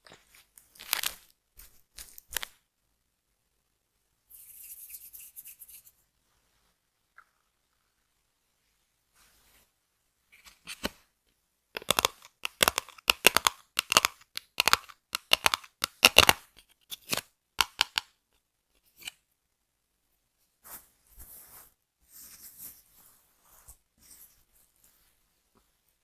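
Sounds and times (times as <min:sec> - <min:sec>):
soft rustling: 0:04.3 - 0:11.0, 0:20.4 - 0:26.0.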